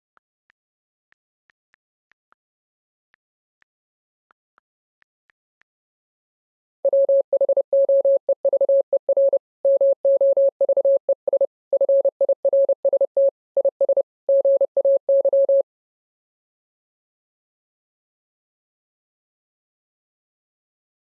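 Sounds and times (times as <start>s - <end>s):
morse code beeps: 6.8s - 15.6s.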